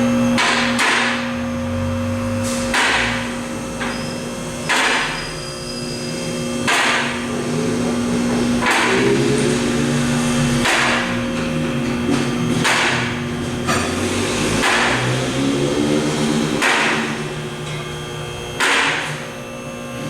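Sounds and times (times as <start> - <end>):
vehicle lift motor humming: 0.0 - 20.0.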